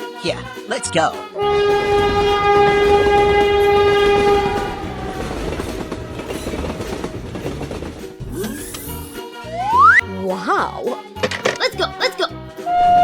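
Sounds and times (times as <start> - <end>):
train horn long note: 1.4 - 6.6
moving train running noise: 1.4 - 10.0.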